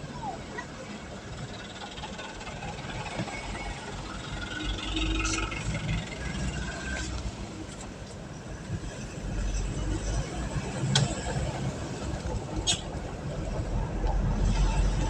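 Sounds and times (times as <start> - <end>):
vehicle engine idling: 0.0 - 7.5.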